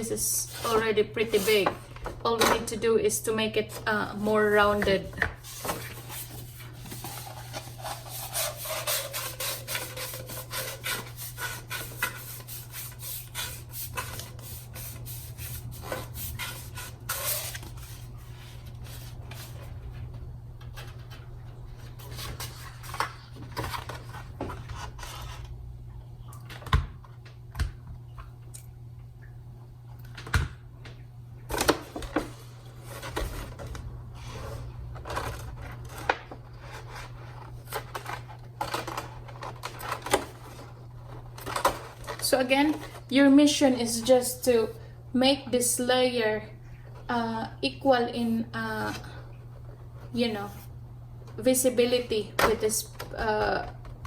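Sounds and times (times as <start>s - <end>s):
low steady hum: 0.0s - 54.0s
paper rustling and scraping: 0.4s - 2.6s, 3.7s - 19.8s, 20.8s - 25.5s, 31.5s - 43.1s.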